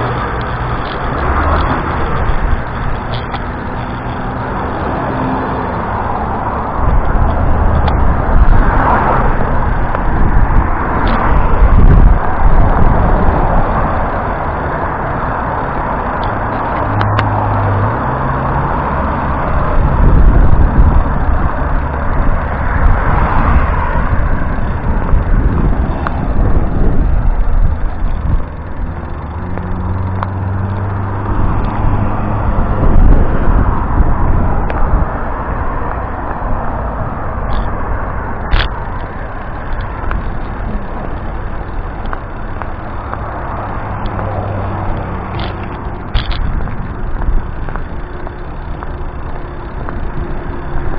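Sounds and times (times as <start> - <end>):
road vehicles passing: 0.0 - 50.9
wind buffeting microphone: 0.0 - 50.9.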